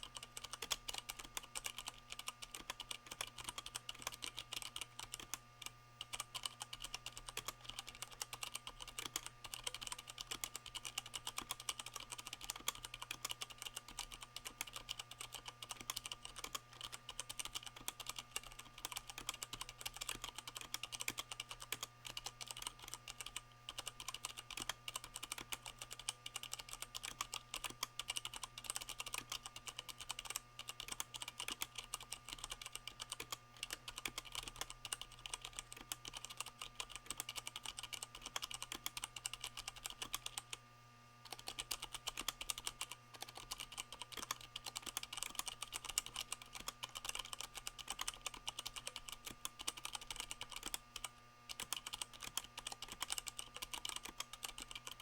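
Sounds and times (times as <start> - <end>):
mechanical keyboard typing: 0.0 - 40.6, 41.3 - 55.0.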